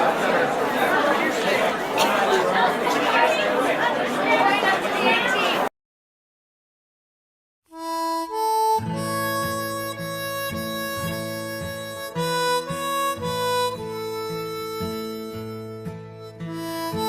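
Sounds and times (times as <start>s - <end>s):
harmonica melody with chords: 7.7s - 17.0s.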